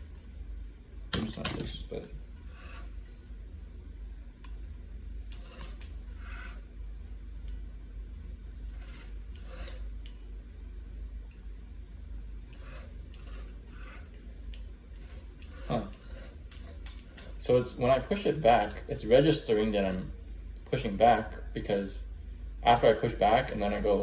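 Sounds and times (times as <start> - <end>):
steady low hum: 0.0 - 24.0
rubbing and scraping noises: 2.4 - 3.0, 12.6 - 14.2.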